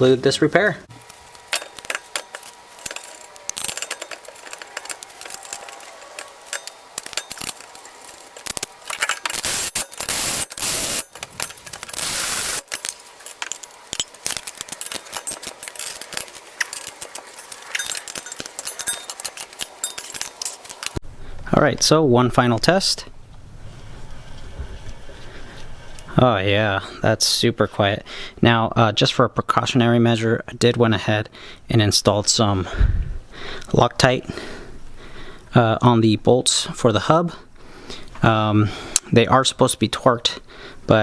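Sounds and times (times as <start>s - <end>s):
metal tools clinking: 0.9s - 21.0s
ratchet wrench rasping: 1.5s - 21.0s.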